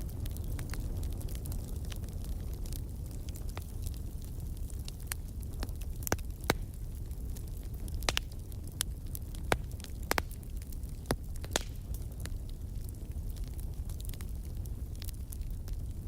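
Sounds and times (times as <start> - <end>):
fire pops and snaps: 0.0 - 16.0
low rumble of burning fire: 0.0 - 16.0.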